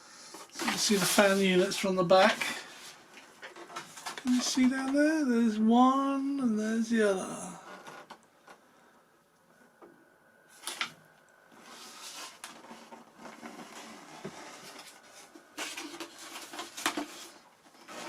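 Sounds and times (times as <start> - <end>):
rustling and light clatter: 0.4 - 4.5, 10.5 - 18.0.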